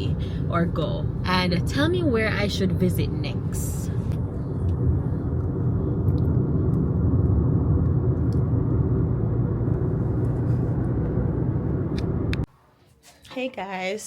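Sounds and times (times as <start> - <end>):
car engine and tyre rumble: 0.0 - 12.5.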